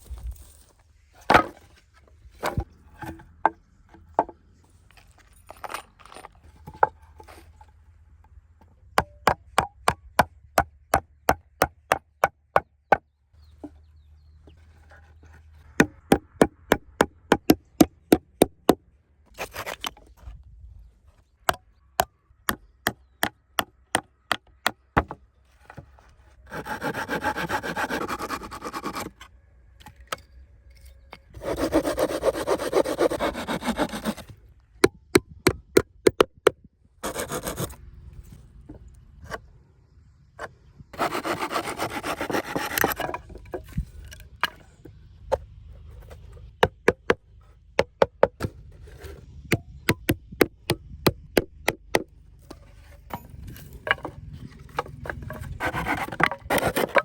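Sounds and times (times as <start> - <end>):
sharp regular taps on wood: 9.0 - 13.0
hand tool scraping wood: 25.5 - 29.3, 31.4 - 34.4, 37.0 - 37.8, 40.9 - 44.8, 51.9 - 57.0.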